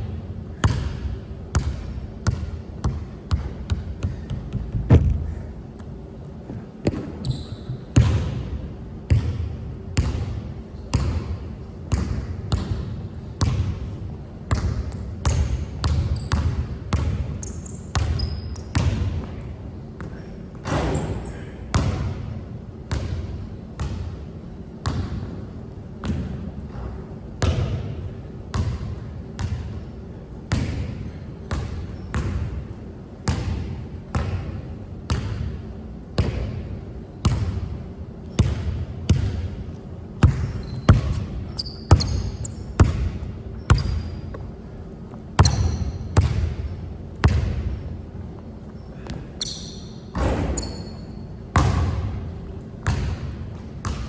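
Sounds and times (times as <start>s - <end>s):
basketball bouncing on hard court: 0.6s - 5.9s, 6.8s - 8.5s, 9.1s - 13.9s, 14.5s - 19.4s, 20.7s - 22.2s, 24.8s - 25.3s, 26.0s - 26.4s, 28.5s - 29.8s, 30.5s - 32.5s, 33.3s - 35.5s, 37.2s - 37.7s, 38.3s - 39.6s, 40.2s - 44.4s, 45.4s - 47.8s, 49.0s - 52.2s, 52.8s - 54.0s
shoe squeaks: 6.9s - 8.0s, 15.5s - 16.5s, 17.3s - 18.7s, 20.7s - 21.5s, 40.4s - 42.8s, 43.5s - 44.5s, 45.4s - 46.1s, 48.6s - 51.4s.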